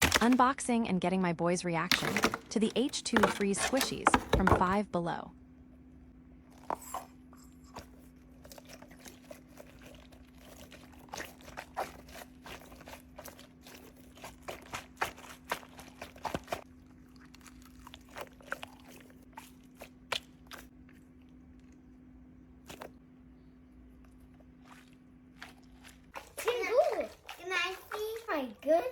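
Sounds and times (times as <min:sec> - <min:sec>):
faint low hum: 0:00.0 - 0:28.9
packaging crinkling and crunching: 0:01.9 - 0:04.8, 0:07.8 - 0:20.7.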